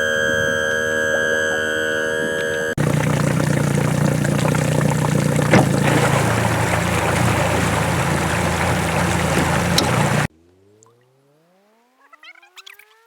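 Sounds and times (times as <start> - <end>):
boat motor running: 0.0 - 10.3.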